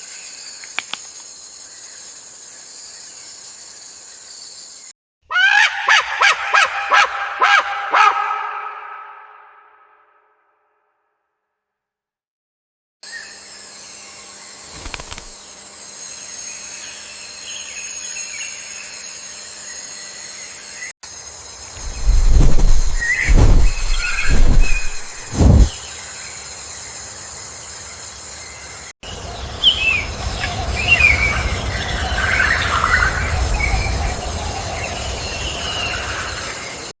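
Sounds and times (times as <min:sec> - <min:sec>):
high insect drone: 0:00.0 - 0:04.9, 0:13.1 - 0:36.9
birds chirping: 0:21.8 - 0:25.7
loud low thumps: 0:21.8 - 0:25.7
low rumble: 0:21.8 - 0:25.7.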